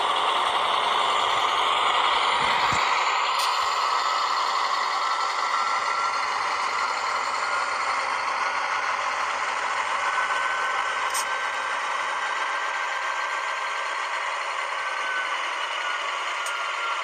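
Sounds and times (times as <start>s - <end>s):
diesel engine sound from small speaker: 0.0s - 17.0s
high click: 11.1s - 11.3s.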